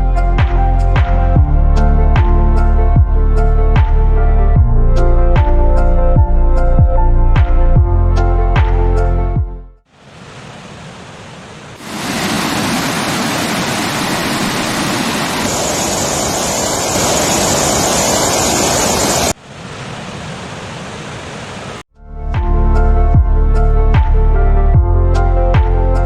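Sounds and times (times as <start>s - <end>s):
music: 0.0s - 9.8s, 21.9s - 26.0s
waterfall rushing: 10.0s - 21.8s.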